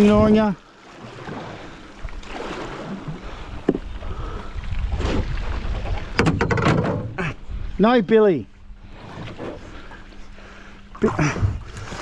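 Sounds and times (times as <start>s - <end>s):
water sloshing and splashing: 0.0s - 7.8s, 8.4s - 12.0s
knocks on pontoon: 6.2s - 7.2s.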